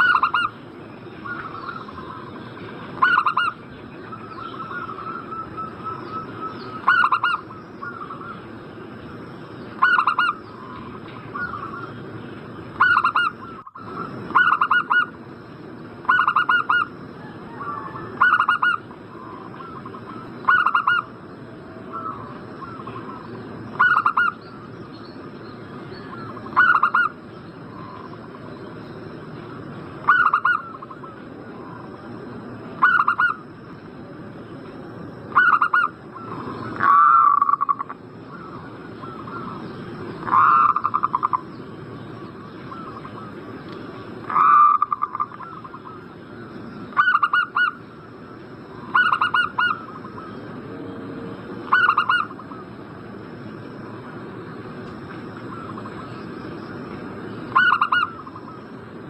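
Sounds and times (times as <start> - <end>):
dove cooing trills: 0.0 - 0.6, 3.0 - 8.4, 9.8 - 12.0, 12.8 - 15.2, 16.0 - 24.7, 26.0 - 28.5, 30.0 - 32.0, 32.7 - 33.5, 35.3 - 41.5, 42.4 - 43.5, 44.2 - 46.1, 46.9 - 52.8, 55.4 - 56.2, 57.5 - 58.7.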